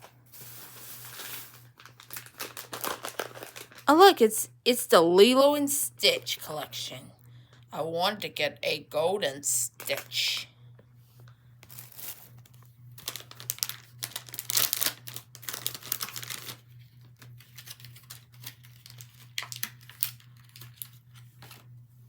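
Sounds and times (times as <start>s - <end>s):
packaging rustling and crackling: 0.0s - 3.9s, 11.7s - 21.7s.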